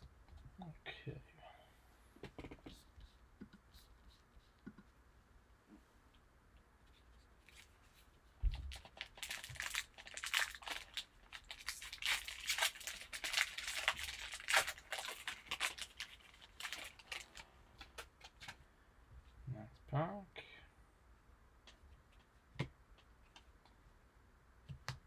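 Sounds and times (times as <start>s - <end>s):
card pack wrapper tearing: 8.7s - 17.4s.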